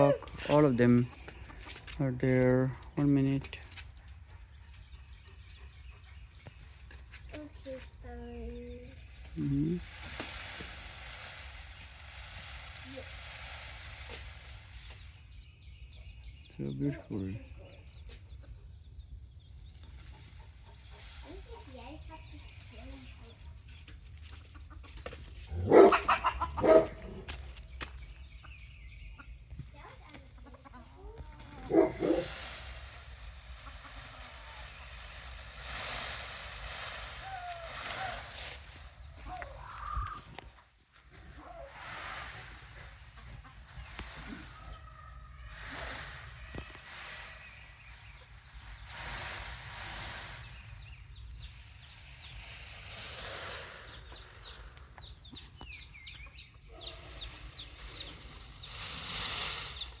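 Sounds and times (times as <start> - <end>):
chicks peeping: 3.7 - 10.3, 13.2 - 40.6, 41.2 - 60.0
steady hiss: 8.3 - 15.3, 31.6 - 40.2, 41.7 - 55.0, 56.9 - 60.0
fowl calling loudly: 25.7 - 27.1.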